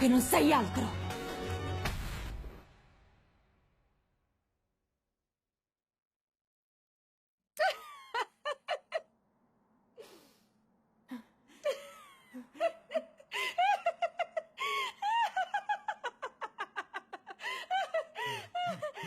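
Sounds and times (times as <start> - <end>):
woman laughing: 7.6 - 9.1, 11.6 - 19.0
breathy intake: 10.0 - 11.3.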